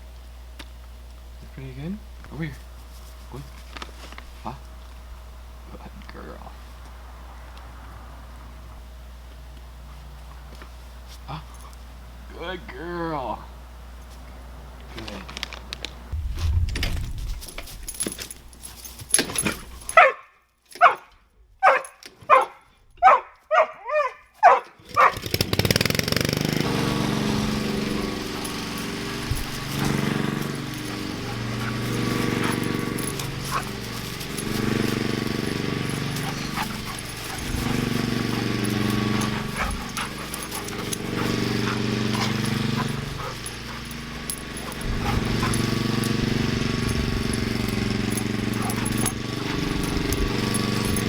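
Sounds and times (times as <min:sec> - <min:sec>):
steady low drone: 0:16.1 - 0:18.6
dog barking: 0:19.9 - 0:25.2, 0:26.7 - 0:51.0.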